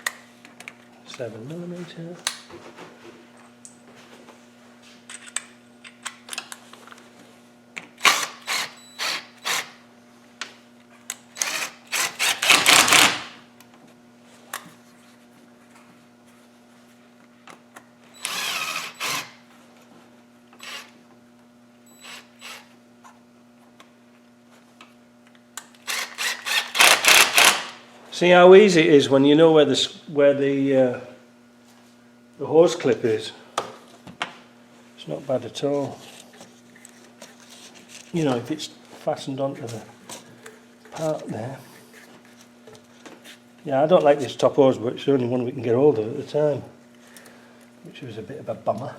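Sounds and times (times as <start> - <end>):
cordless drill spinning in bursts: 8.0 - 9.8, 11.4 - 13.4, 18.2 - 19.4, 20.6 - 21.0, 22.0 - 22.7, 25.8 - 27.8.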